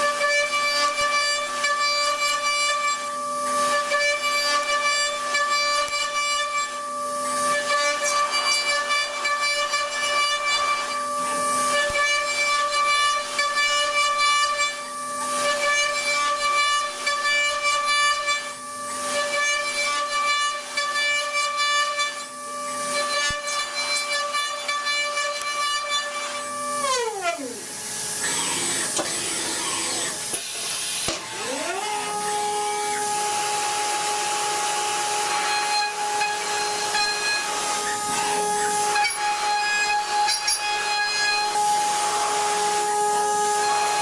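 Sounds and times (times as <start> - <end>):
machine whining and hissing: 21.8 - 44.0.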